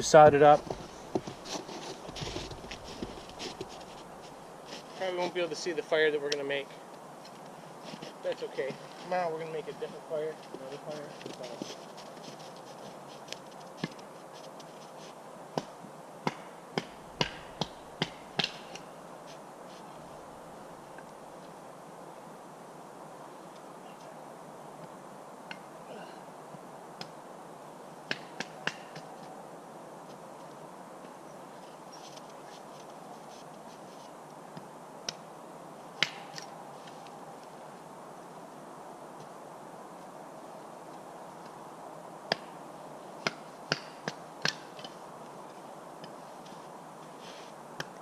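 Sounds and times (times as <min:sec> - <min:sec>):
steady hiss: 0:00.0 - 0:48.0
sharp wooden knocks of firewood: 0:15.5 - 0:18.9, 0:28.1 - 0:29.1, 0:36.0 - 0:36.5, 0:43.2 - 0:44.9.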